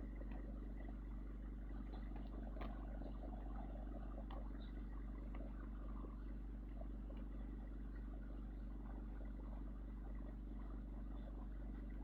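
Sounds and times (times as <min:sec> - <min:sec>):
faint clicks: 0:00.0 - 0:01.0, 0:01.7 - 0:08.1.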